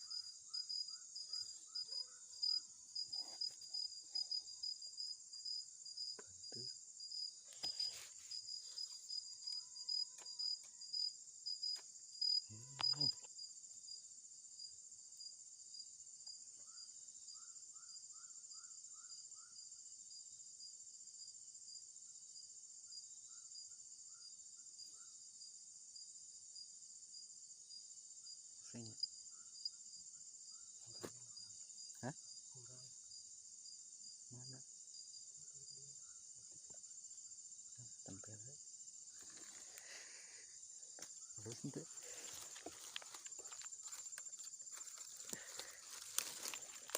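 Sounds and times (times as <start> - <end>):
crickets chirping: 0.0 - 46.9.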